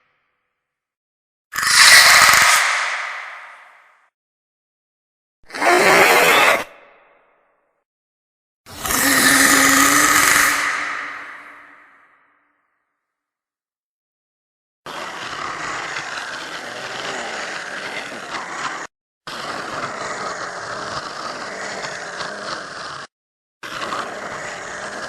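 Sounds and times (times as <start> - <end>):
hissing creature call: 1.6 - 2.9, 5.5 - 6.7, 8.7 - 12.0.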